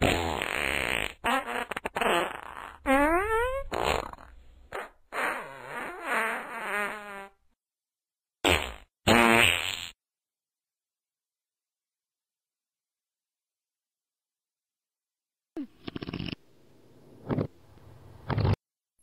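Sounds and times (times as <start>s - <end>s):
fart sounds: 0.0s - 7.4s, 8.4s - 10.0s, 15.6s - 16.4s, 17.2s - 17.5s, 18.3s - 18.6s.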